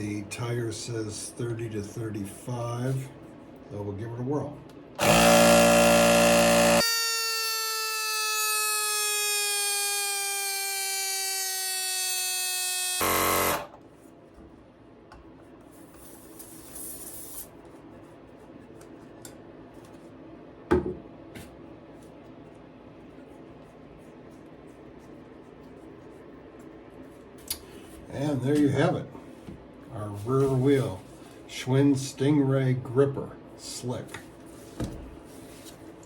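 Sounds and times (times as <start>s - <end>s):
air compressor motor buzzing: 5.0s - 13.8s.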